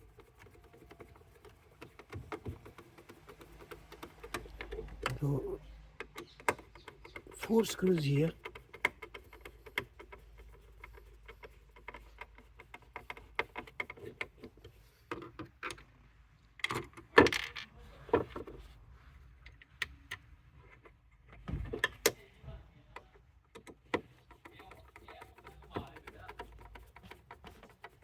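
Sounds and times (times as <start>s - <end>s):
tools and screws clicking: 0.1s - 15.9s.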